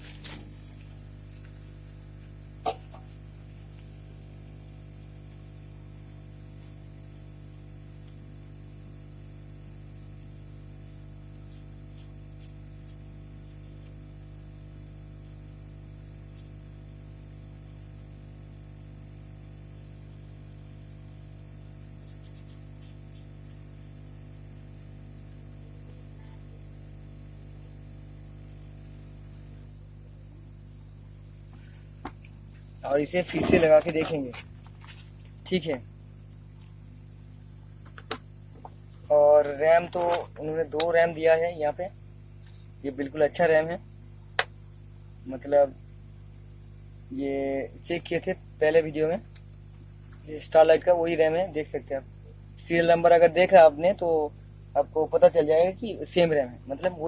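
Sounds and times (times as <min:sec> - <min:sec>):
hot-air blower hissing: 0:00.0 - 0:43.8
low electrical hum: 0:00.0 - 0:57.0
sharp click: 0:44.4 - 0:44.6.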